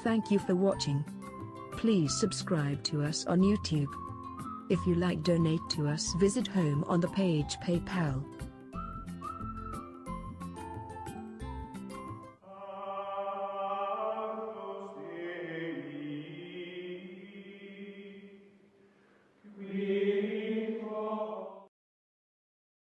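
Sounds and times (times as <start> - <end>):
choir-like chanted notes: 12.4 - 18.5, 19.5 - 21.7.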